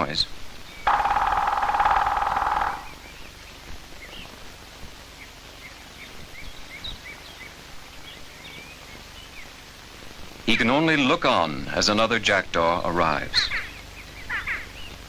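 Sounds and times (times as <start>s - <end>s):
faint hiss: 0.0s - 15.0s
small birds chirping: 0.0s - 15.0s
woodpecker rattling: 0.9s - 3.2s.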